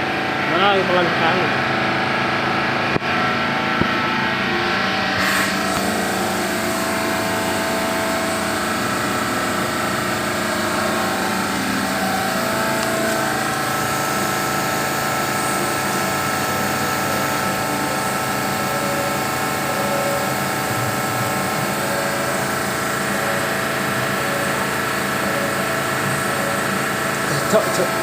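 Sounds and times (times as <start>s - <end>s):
machinery humming: 0.0s - 28.0s
noisy rush: 0.0s - 28.0s.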